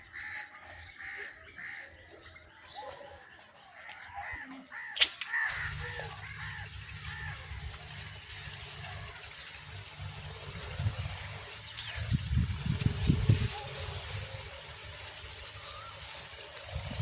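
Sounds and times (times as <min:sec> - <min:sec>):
crows cawing: 0:00.0 - 0:07.8
small birds chirping: 0:00.0 - 0:17.0.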